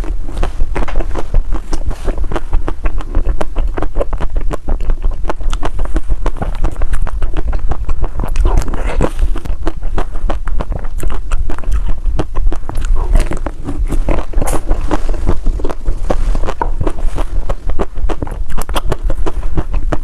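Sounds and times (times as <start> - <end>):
crunchy food being chewed: 0.0 - 20.0.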